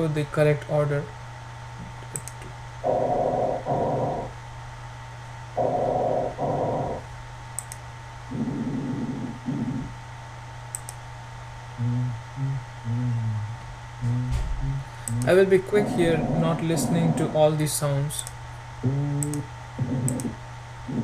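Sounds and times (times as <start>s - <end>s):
mouse clicks: 2.1s - 2.5s, 7.6s - 7.8s, 10.7s - 11.0s
recorded breath sounds: 11.8s - 17.4s.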